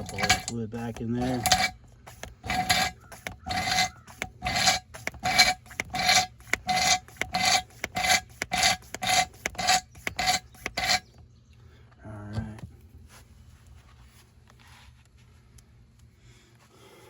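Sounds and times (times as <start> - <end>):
hand oil pump squeaking: 0.0 - 11.1.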